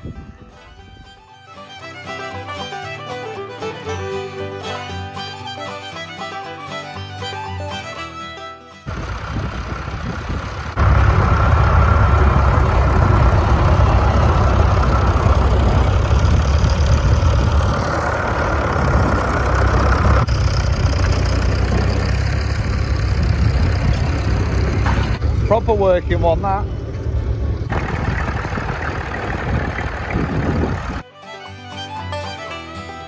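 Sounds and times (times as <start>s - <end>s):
tractor engines running: 8.8s - 33.0s.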